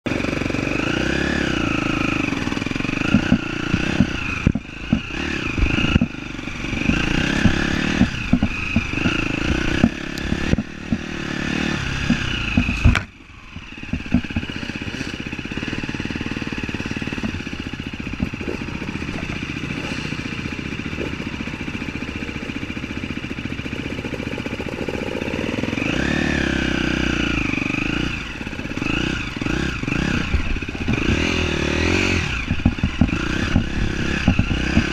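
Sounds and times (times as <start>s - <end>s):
off-road vehicle engine revving: 0.1s - 34.9s
clattering knocks: 3.1s - 11.3s, 12.0s - 14.8s.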